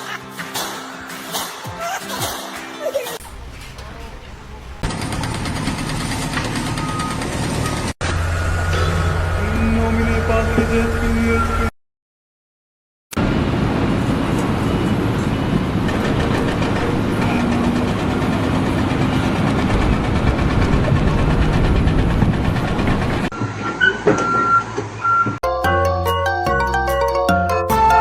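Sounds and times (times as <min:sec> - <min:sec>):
heavy machinery rumble and clatter: 0:03.2 - 0:11.4, 0:13.2 - 0:25.3
reversing alarm beeps: 0:06.8 - 0:07.9, 0:23.7 - 0:25.4.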